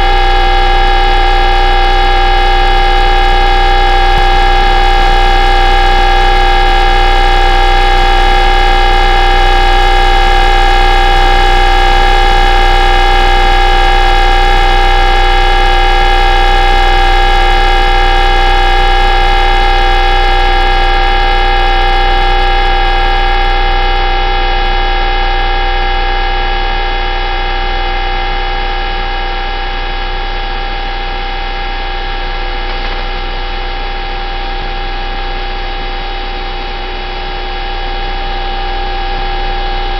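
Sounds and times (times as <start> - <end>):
radio humming drone: 0.0 - 11.1, 32.2 - 37.5.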